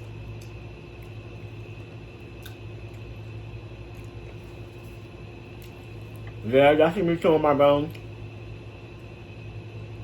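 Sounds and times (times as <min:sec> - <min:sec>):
chewing on bones clicks: 0:00.0 - 0:03.1
low electrical hum: 0:00.0 - 0:10.0.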